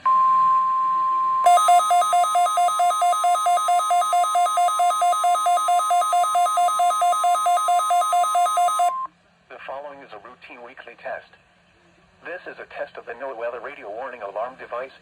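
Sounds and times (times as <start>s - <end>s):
alternating pitch alarm beeps: 0.1s - 9.1s
steady warning alarm tone: 1.4s - 9.1s.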